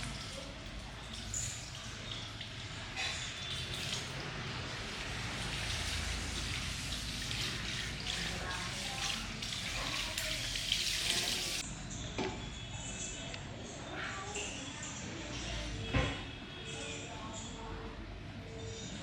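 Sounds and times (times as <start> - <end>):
tap water splashing into basin: 4.8 - 11.6.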